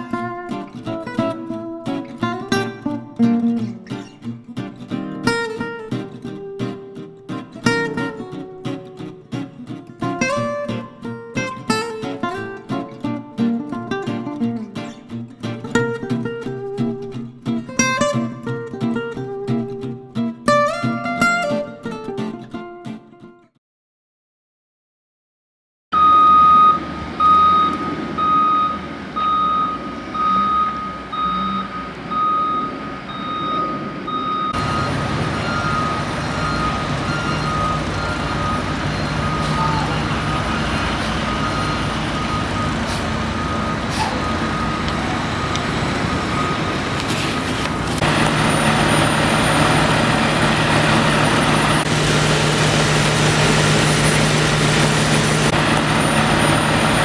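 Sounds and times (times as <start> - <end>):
truck reversing beeper: 26.0 - 57.0
truck engine running: 26.8 - 57.0.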